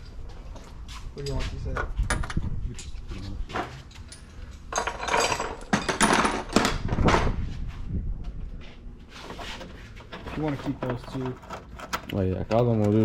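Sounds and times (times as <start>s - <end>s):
tools and metal parts clattering: 1.2s - 7.4s, 9.2s - 13.0s.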